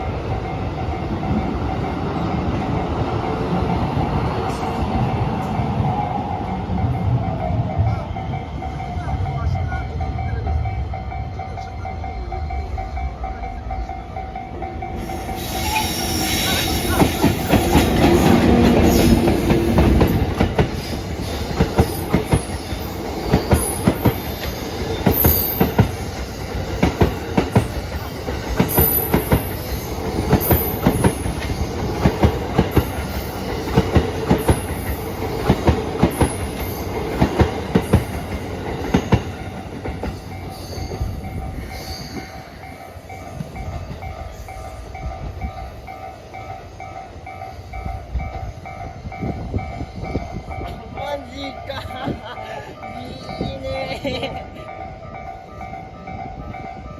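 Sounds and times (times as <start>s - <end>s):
electric locomotive passing: 0.0s - 56.9s
high wheel squeal: 15.0s - 18.3s, 40.5s - 43.0s
train wheels clattering over rail joints: 15.0s - 44.4s.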